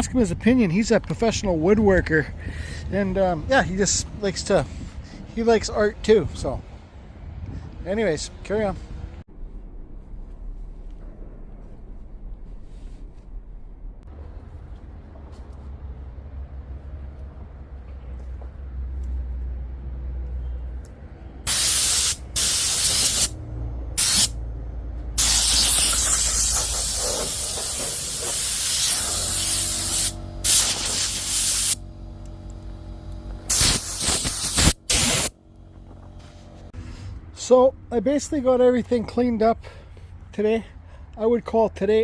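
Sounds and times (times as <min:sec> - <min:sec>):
low steady hum: 0:08.8 - 0:19.2, 0:29.5 - 0:33.5
loud hissing spray: 0:21.5 - 0:23.4, 0:24.0 - 0:24.4, 0:25.2 - 0:31.8, 0:33.5 - 0:35.4.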